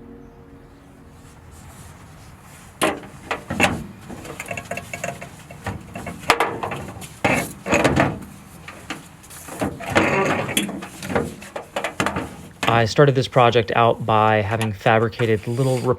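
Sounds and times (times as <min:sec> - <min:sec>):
metallic clanks and knocks: 0:02.8 - 0:12.8.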